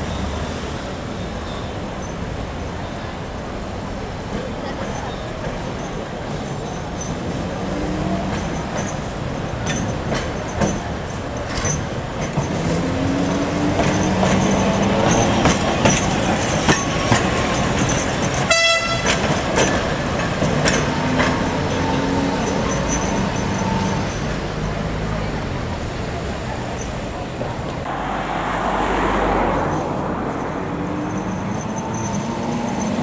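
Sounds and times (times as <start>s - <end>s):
wheels clicking over rail joints: 0.0s - 27.9s
tram motor whine: 12.1s - 33.0s
tram horn toot: 13.2s - 24.5s.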